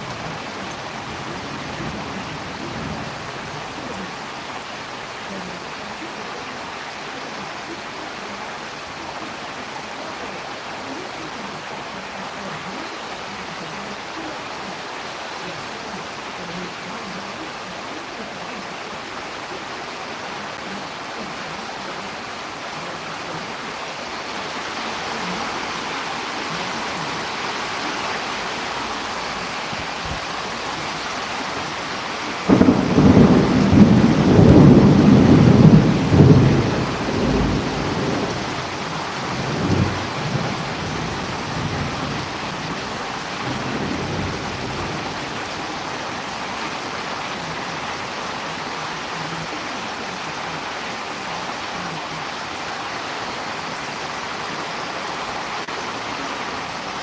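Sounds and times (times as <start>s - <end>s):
steady rain: 0.0s - 57.0s
thunder clap rumbling: 32.5s - 45.4s.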